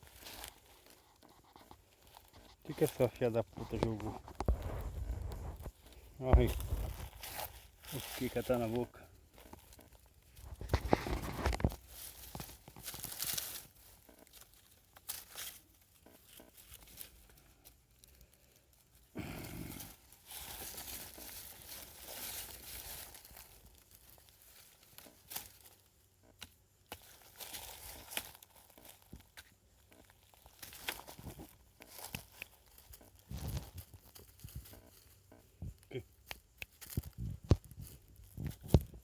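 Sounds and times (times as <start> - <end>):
animal crunching eggshell: 0.0 - 21.4.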